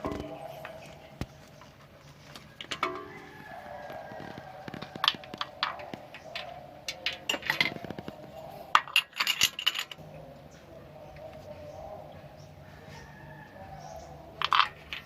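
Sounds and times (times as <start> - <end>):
metallic clinks of hand tools: 8.8 - 10.0.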